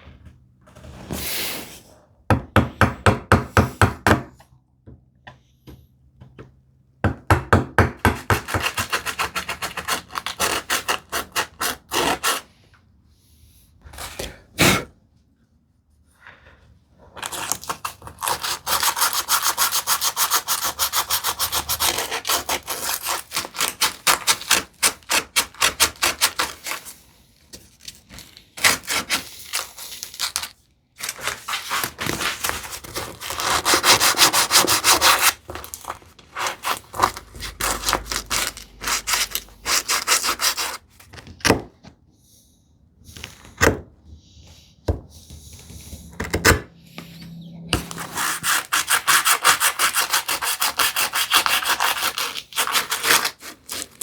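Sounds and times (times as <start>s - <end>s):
sandpaper rubbing on wood: 18.2s - 26.8s, 31.2s - 35.4s, 36.4s - 40.8s, 47.8s - 54.0s.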